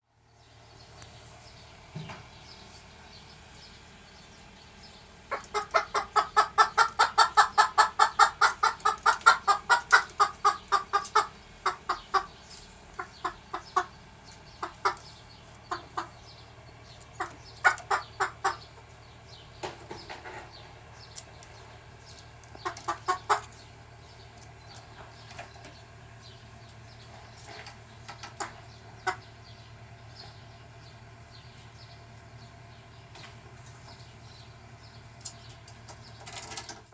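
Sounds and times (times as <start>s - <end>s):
rooster clucking: 5.3s - 16.3s, 17.1s - 19.0s, 22.5s - 23.6s.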